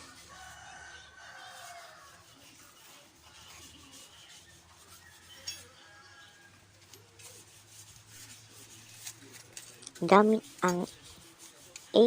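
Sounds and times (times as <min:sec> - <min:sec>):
hand tools rubbing and scraping: 0:00.0 - 0:12.0.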